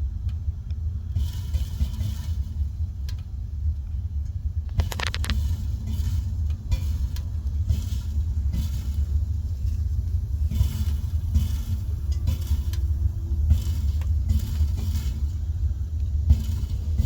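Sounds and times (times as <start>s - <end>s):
water heater rumbling: 0.0s - 17.0s
crackling bursts: 4.6s - 5.8s.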